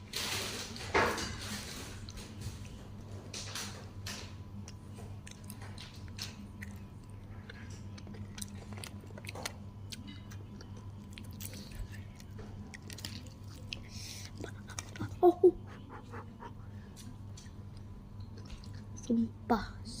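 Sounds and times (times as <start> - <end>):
low electrical hum: 0.0 - 20.0
chewing and mouth smacking: 4.6 - 16.6, 18.2 - 19.0.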